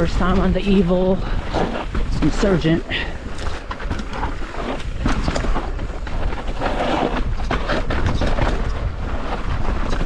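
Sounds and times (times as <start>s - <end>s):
tyres crunching on loose soil: 0.0s - 10.0s
bike knocks and rattles: 0.3s - 2.4s, 3.1s - 9.3s.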